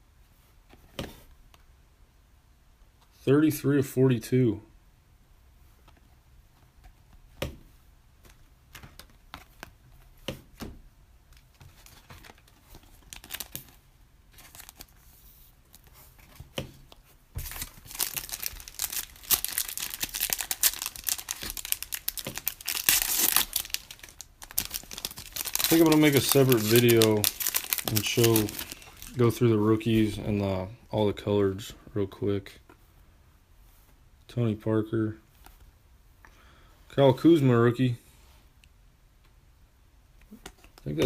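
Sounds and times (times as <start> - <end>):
card pack wrapper crinkling: 11.4 - 15.0, 17.4 - 29.4.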